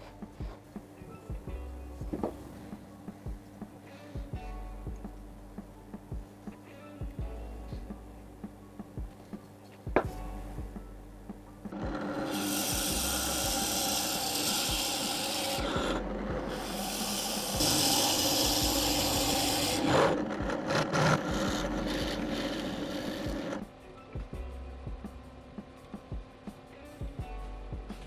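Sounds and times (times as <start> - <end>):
drill press motor hum: 11.7 - 23.6
drill rasping wood: 11.7 - 23.6.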